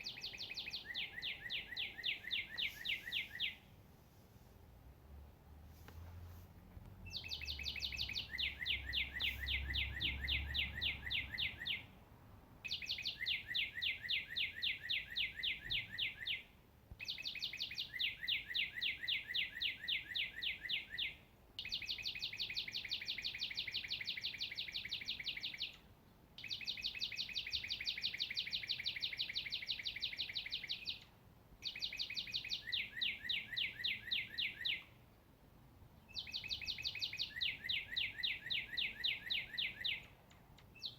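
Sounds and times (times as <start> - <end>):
songbird trilling: 0.0 - 3.6, 7.1 - 11.9, 12.7 - 25.8, 26.4 - 34.9, 36.1 - 40.2.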